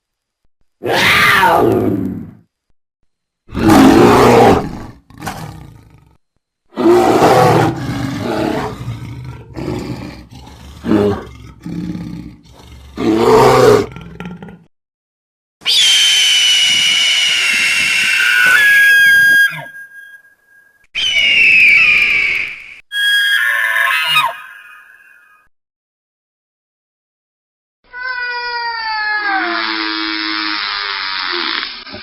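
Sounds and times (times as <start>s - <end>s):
big cat roaring: 0.8s - 2.4s, 3.5s - 14.7s.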